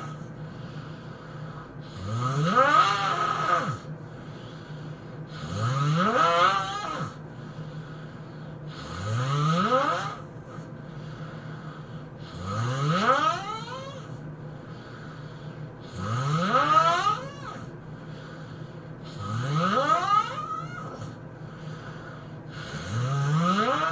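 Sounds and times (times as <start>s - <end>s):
person snoring loudly: 0.0s - 0.2s, 1.4s - 4.6s, 5.3s - 7.2s, 8.7s - 10.6s, 12.2s - 14.2s, 15.8s - 18.3s, 19.0s - 23.9s.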